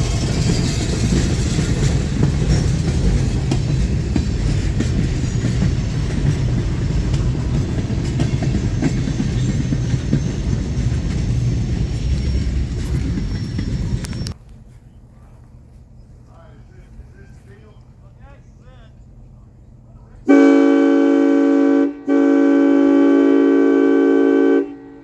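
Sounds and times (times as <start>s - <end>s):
wheels clacking over rail joints: 0.0s - 14.4s
freight train rumbling past: 0.0s - 14.5s, 16.0s - 25.0s.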